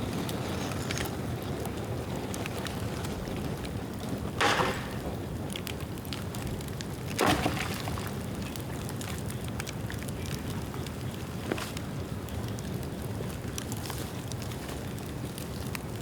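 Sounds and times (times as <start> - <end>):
bonfire burning with crackling: 0.0 - 16.0
sharp bursts of bamboo: 4.4 - 5.4.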